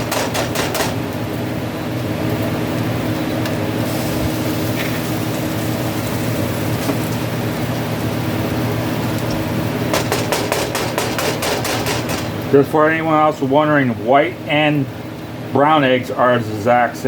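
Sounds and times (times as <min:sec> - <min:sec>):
vegetables sizzling in a frying pan: 0:01.0 - 0:10.2.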